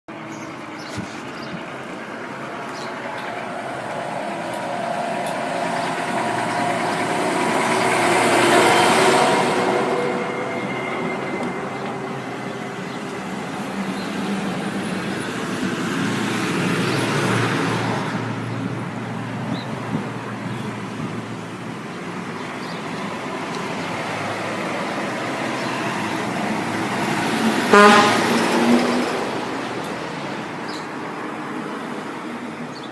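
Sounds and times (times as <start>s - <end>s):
passing truck noise: 0.1s - 32.9s
truck horn chord: 27.7s - 28.7s.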